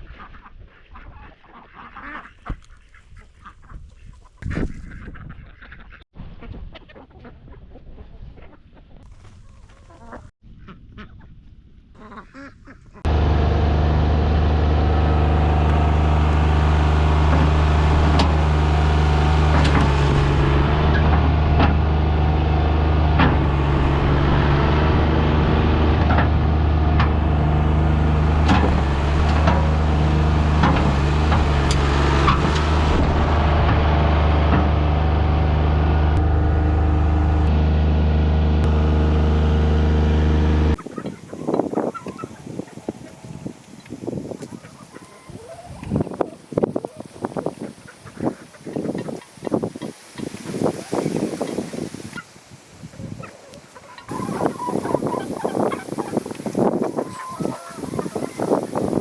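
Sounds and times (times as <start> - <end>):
chicken clucking: 0.0 - 11.3, 40.7 - 52.3, 52.9 - 59.0
engine running: 13.0 - 40.8
knocks and clicks: 17.2 - 35.3.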